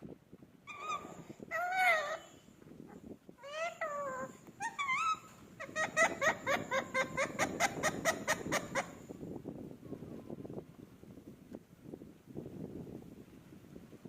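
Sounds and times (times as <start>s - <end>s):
parrot calling: 0.7s - 2.4s, 3.4s - 9.0s.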